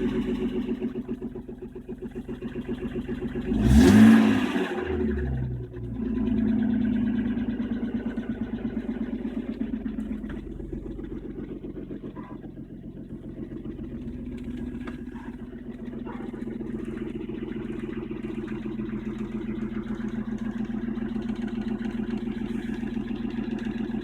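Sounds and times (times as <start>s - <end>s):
car engine idling: 0.0s - 24.0s
fast even engine tapping: 6.9s - 24.0s.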